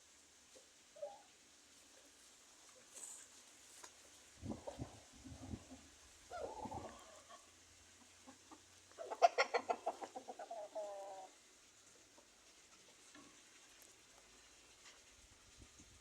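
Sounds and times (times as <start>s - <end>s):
chicken clucking: 4.4s - 13.1s.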